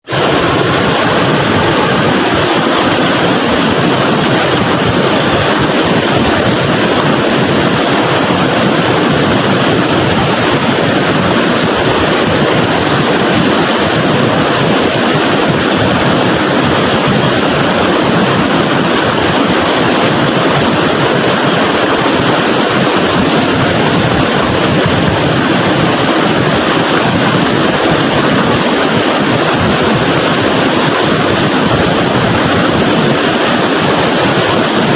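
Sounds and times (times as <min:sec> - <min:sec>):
flooded river roaring: 0:00.0 - 0:34.9.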